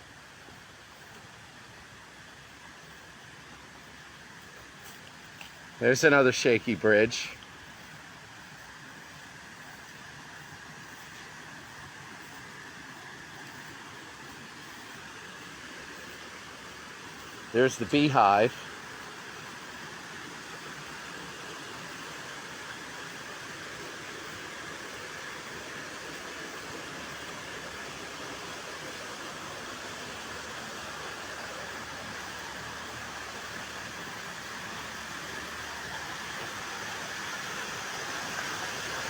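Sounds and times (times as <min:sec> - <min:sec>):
waterfall rushing: 0:11.6 - 0:39.0.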